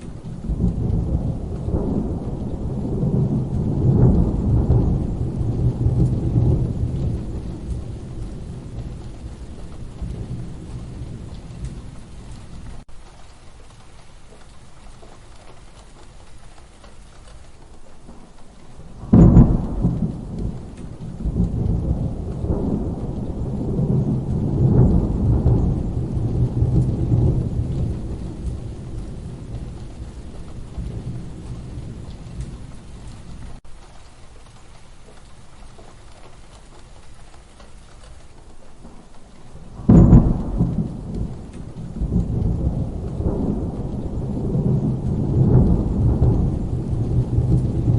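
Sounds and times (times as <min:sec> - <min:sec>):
steady rain: 0:00.0 - 0:47.9
thunderclaps: 0:00.0 - 0:47.9.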